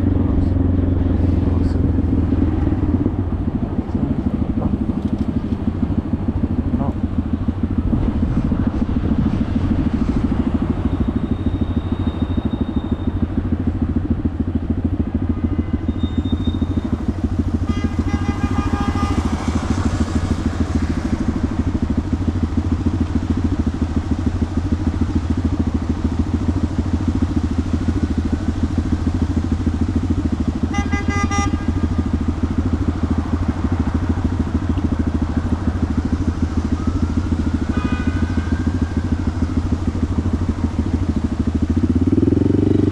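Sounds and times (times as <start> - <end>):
motorcycle engine running: 0.0 - 42.9
vehicle horn honking: 17.6 - 20.1, 30.6 - 32.2, 37.7 - 39.2.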